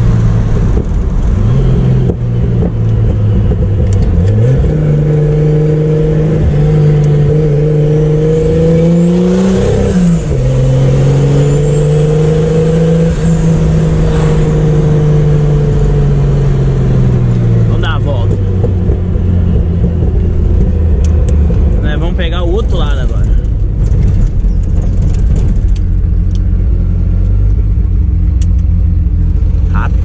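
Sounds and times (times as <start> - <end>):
car engine under load: 0.0 - 30.0.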